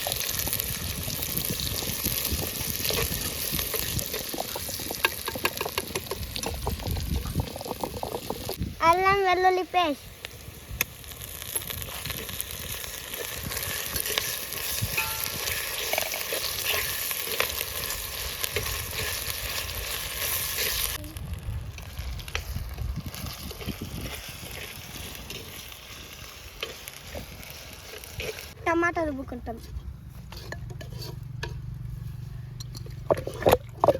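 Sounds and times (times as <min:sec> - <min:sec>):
onions and spices sizzling in oil: 0:00.0 - 0:33.4
spoon stirring with clicks and scrapes: 0:01.4 - 0:08.6, 0:11.5 - 0:21.0, 0:26.6 - 0:28.5, 0:29.5 - 0:31.7, 0:32.6 - 0:33.9.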